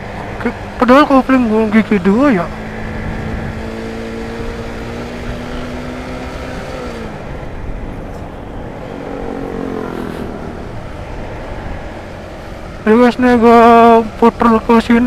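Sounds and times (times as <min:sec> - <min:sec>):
motorcycle engine running: 0:00.0 - 0:12.9
wind rushing over microphone: 0:02.4 - 0:12.9.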